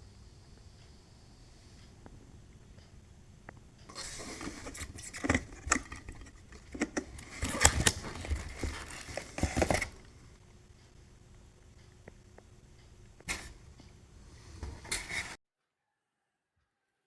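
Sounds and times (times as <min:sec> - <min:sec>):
packaging rustling: 0:04.0 - 0:10.1.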